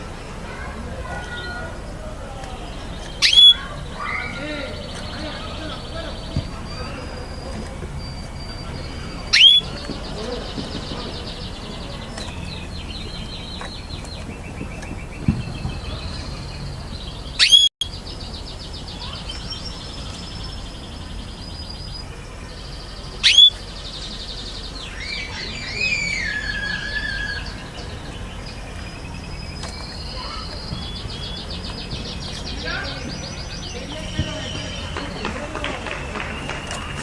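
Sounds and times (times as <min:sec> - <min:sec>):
canaries trilling: 0:00.0 - 0:37.0
sharp upward-sweeping chirps: 0:03.2 - 0:04.4, 0:06.8 - 0:09.8, 0:17.4 - 0:17.7, 0:23.2 - 0:23.6.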